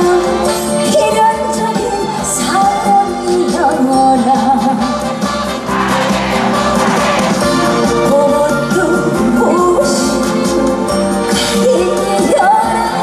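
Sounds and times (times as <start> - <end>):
woman singing: 0.0 - 4.9, 8.0 - 13.0
amplified band accompaniment: 0.0 - 13.0.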